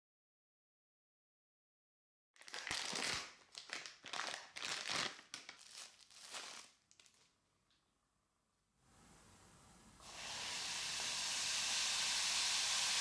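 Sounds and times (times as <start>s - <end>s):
wrapper crinkling and tearing: 2.4s - 7.4s.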